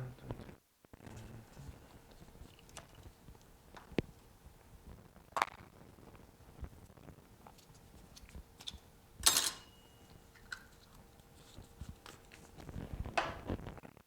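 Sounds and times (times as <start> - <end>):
tools and parts clicking: 8.6 - 9.8.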